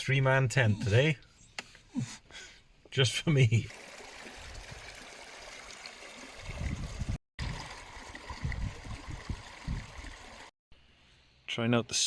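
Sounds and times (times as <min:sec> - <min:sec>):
rushing water: 0:03.5 - 0:10.5
wind buffeting microphone: 0:06.4 - 0:07.7, 0:08.3 - 0:10.3.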